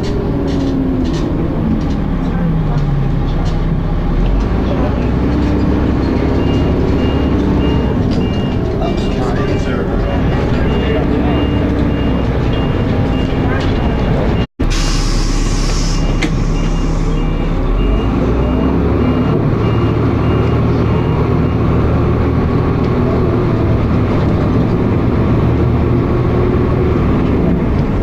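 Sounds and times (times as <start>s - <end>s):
bus engine: 0.0s - 28.0s
air hiss: 14.7s - 17.0s.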